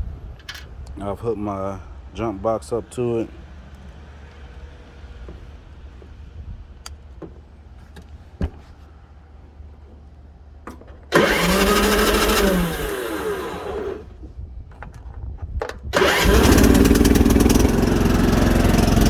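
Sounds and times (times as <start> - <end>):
mower engine running: 11.1 - 14.1, 15.9 - 19.0
starter cranking engine: 11.1 - 14.2, 15.9 - 19.0.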